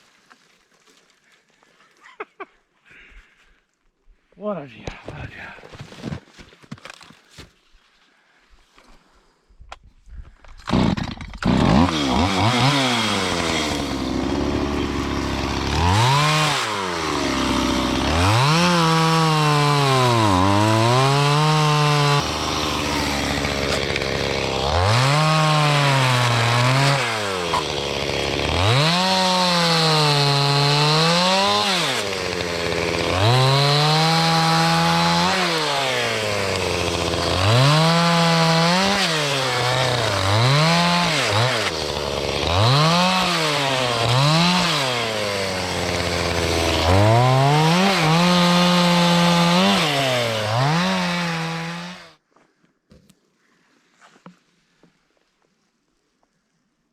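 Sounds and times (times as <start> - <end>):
chainsaw revving and cutting: 10.6 - 52.2.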